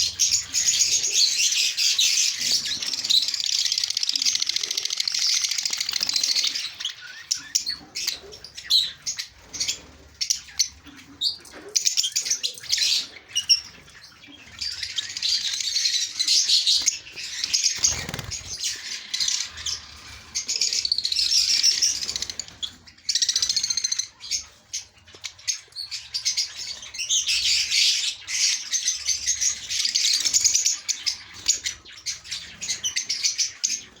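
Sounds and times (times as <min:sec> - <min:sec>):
small birds chirping and twittering: 0:00.0 - 0:34.0
wings fluttering: 0:05.5 - 0:06.6, 0:16.8 - 0:20.5.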